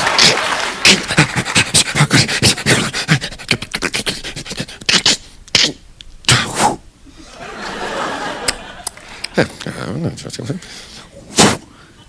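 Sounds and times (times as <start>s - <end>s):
man making mouth clicks and puffs: 0.2s - 6.8s.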